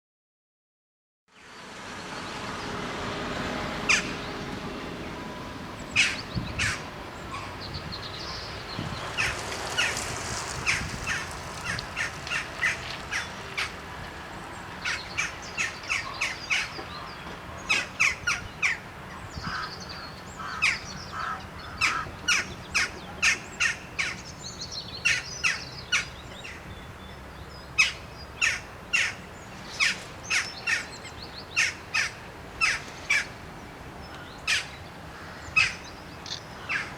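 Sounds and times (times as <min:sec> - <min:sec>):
outdoor background noise: 0:01.3 - 0:36.9
birds chirping: 0:01.4 - 0:36.9
crows cawing: 0:19.5 - 0:24.2, 0:34.1 - 0:35.8, 0:36.6 - 0:36.9.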